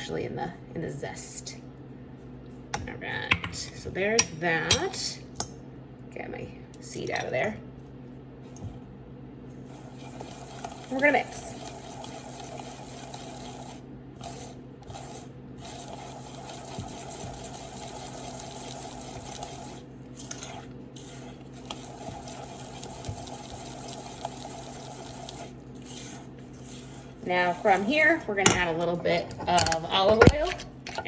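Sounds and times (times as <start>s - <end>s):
mixture stirred in a bowl: 9.5s - 31.0s.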